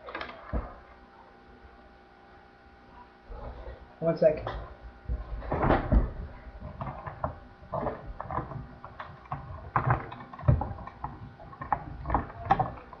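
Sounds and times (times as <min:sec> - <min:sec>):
handling noise clicks and knocks: 0:04.4 - 0:13.0.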